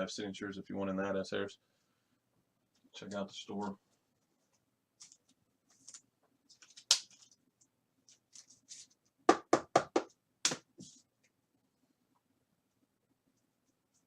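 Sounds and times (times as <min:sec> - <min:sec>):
trading cards rustling: 0:05.0 - 0:09.0.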